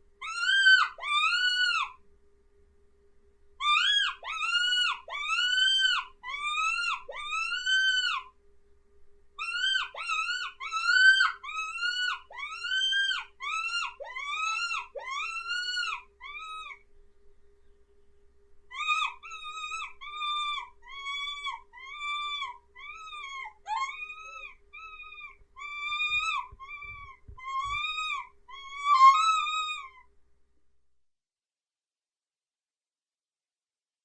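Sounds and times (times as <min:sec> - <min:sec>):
high mouse squeaks: 0:09.4 - 0:16.8, 0:18.7 - 0:30.0.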